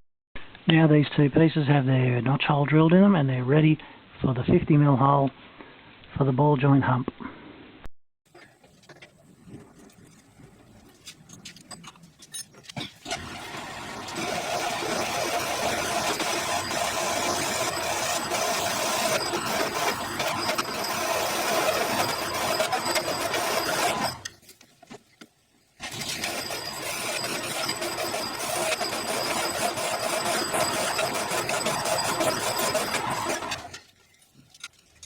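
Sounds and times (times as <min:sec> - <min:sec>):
drill mill cutting metal: 0:13.0 - 0:24.3, 0:25.8 - 0:33.8.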